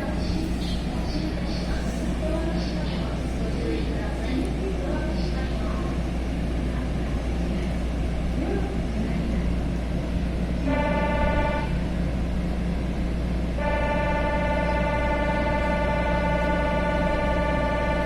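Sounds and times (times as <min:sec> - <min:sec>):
train rumbling: 0:00.0 - 0:18.0
horn-like tone: 0:10.7 - 0:11.7, 0:13.6 - 0:18.0.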